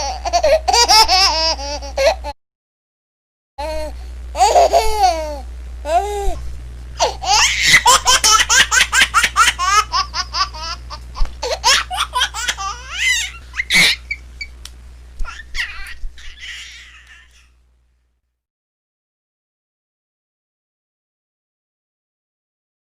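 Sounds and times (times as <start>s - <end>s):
baby laughing: 0.0s - 2.4s, 4.4s - 6.4s, 7.0s - 14.5s, 15.2s - 17.5s
steady low hum: 0.0s - 2.4s, 3.6s - 18.2s.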